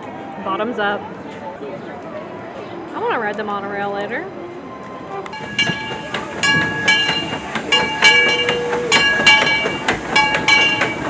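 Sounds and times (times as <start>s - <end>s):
train rolling: 4.3s - 11.0s
metallic clanks and ringing: 5.4s - 11.0s.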